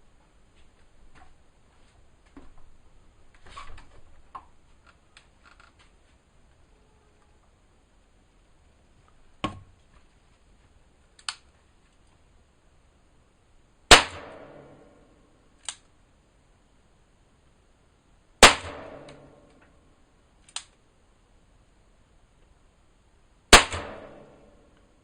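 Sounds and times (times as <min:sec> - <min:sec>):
gunshots with echo: 0:18.4 - 0:19.3, 0:23.6 - 0:24.4.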